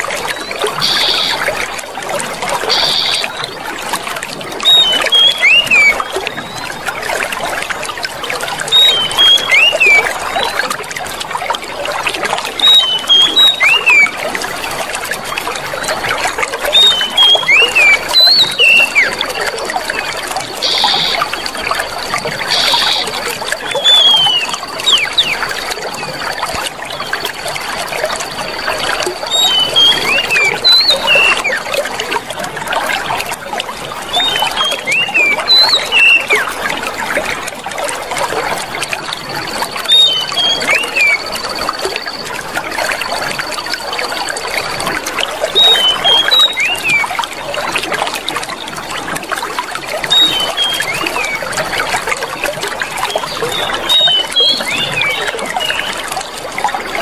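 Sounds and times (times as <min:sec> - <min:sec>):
water trickling and splashing: 0:00.0 - 0:57.0
short high bird chirps: 0:20.6 - 0:21.2, 0:34.2 - 0:36.5, 0:39.9 - 0:41.4, 0:53.1 - 0:55.9.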